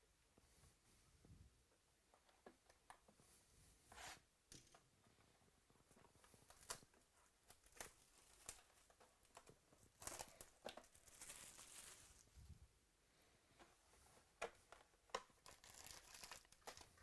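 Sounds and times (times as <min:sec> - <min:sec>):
card pack wrappers crinkling: 0:06.4 - 0:12.3, 0:14.7 - 0:17.0.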